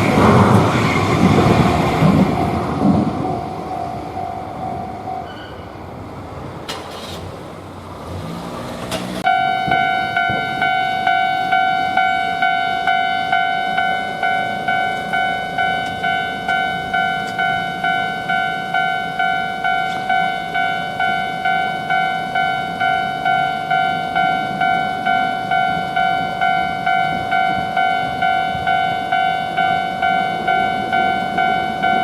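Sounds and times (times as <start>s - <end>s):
passing vehicle noise: 0.0s - 18.4s
railroad crossing warning bell: 9.2s - 32.0s.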